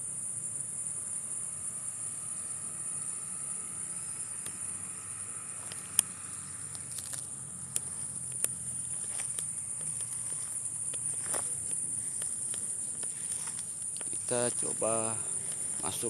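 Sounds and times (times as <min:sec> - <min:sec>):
night insects droning: 0:00.0 - 0:16.0
sharp clicks and snaps: 0:06.7 - 0:14.2.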